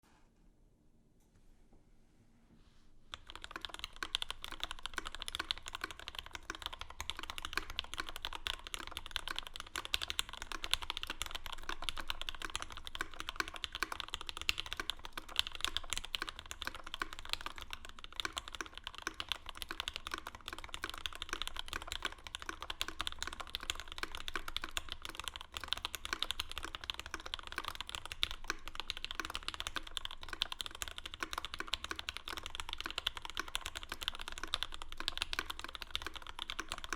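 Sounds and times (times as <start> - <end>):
fast typing on mechanical keyboard: 3.1 - 36.9.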